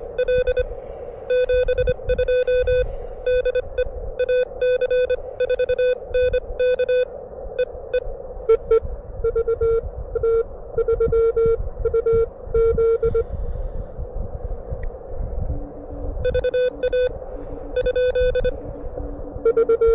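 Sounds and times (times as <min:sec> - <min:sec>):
wind rumble on microphone: 0:00.0 - 0:19.9
morse code tone: 0:00.1 - 0:00.7, 0:01.3 - 0:13.2, 0:16.2 - 0:18.6, 0:19.4 - 0:19.9.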